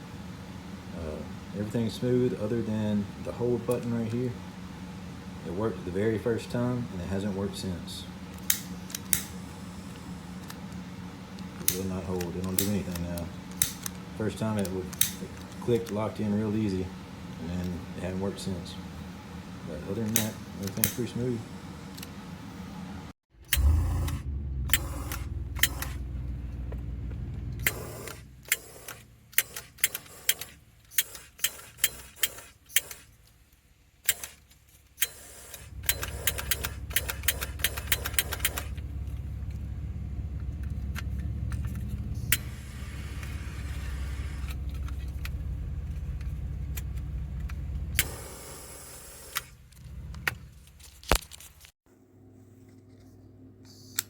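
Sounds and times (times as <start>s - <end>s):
torch trigger clicks: 8.3s - 9.4s, 11.4s - 16.0s, 23.4s - 26.1s, 27.5s - 33.2s, 34.0s - 34.4s, 35.0s - 39.6s, 40.6s - 45.4s, 46.7s - 49.6s
steady low rumble: 23.3s - 28.5s, 35.7s - 48.6s.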